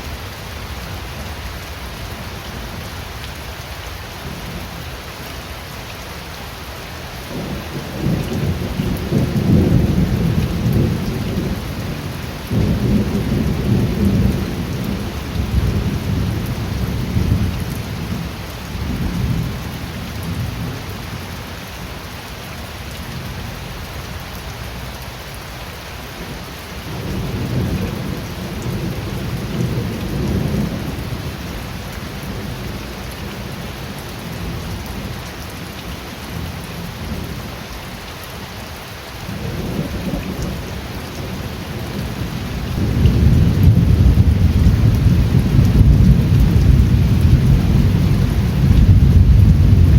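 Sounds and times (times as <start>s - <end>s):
heavy rain hissing: 0.0s - 49.9s
thunder rumbling: 7.3s - 19.6s, 39.2s - 49.9s.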